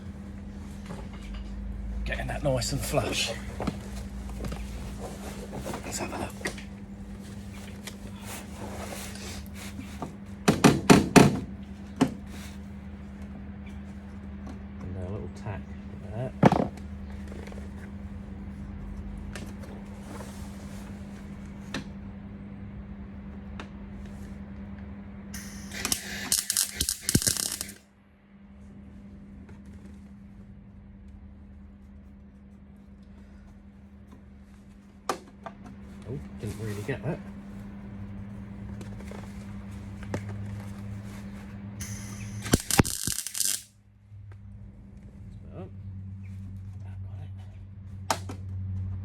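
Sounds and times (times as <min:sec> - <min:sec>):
low electrical hum: 0:00.0 - 0:49.0
welder low hum: 0:25.4 - 0:27.8, 0:41.8 - 0:43.7
welding arc crackling: 0:25.4 - 0:27.8, 0:41.8 - 0:43.7.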